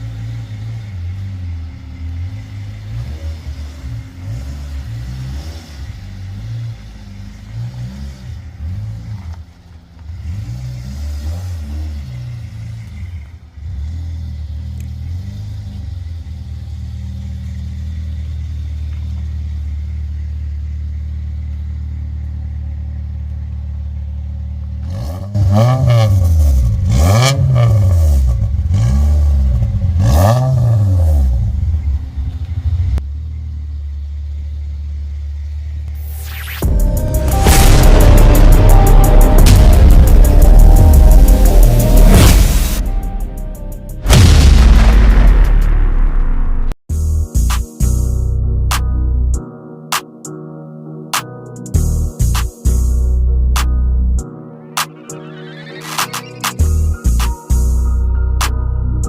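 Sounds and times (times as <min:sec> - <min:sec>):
car engine revving: 0:00.0 - 0:46.8.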